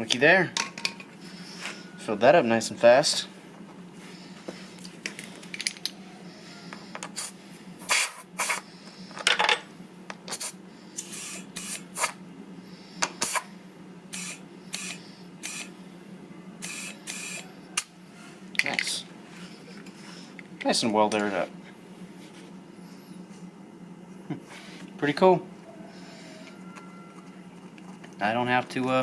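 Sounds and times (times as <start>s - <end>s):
steady low hum: 0.0s - 29.0s
compressed air bursts: 7.2s - 8.7s, 10.3s - 12.2s, 13.2s - 13.5s, 14.1s - 15.7s, 16.6s - 17.5s.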